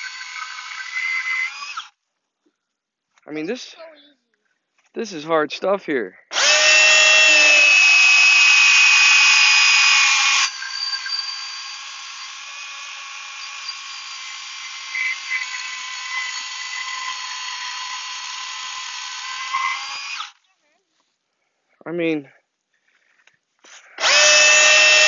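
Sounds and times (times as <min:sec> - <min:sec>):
battery chainsaw cutting wood: 0:00.0 - 0:01.9, 0:06.3 - 0:20.4, 0:24.0 - 0:25.0.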